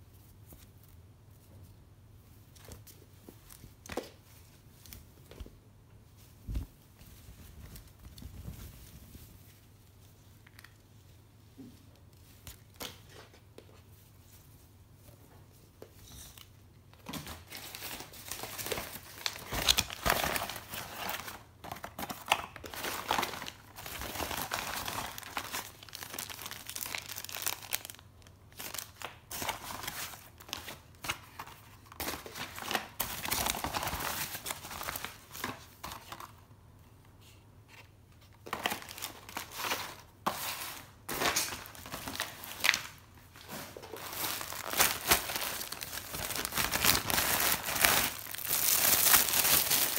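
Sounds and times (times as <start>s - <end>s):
packaging crinkling and tearing: 17.1s - 36.3s, 38.4s - 49.9s.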